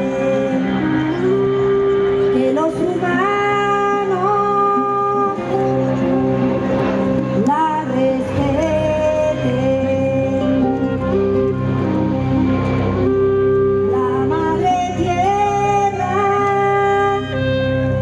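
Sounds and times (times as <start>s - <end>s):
person singing wordless melody: 0.0s - 12.6s, 13.2s - 18.0s.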